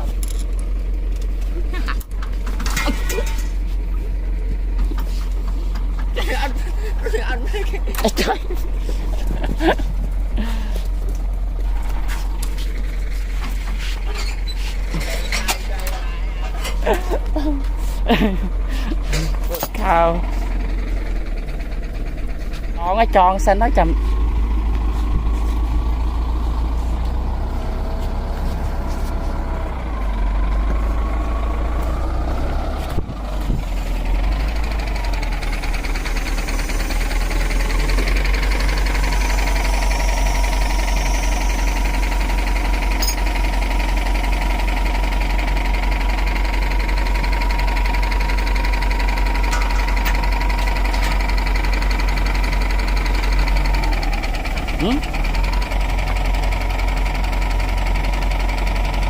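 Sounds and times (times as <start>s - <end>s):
hand tractor engine running: 0.0s - 59.0s.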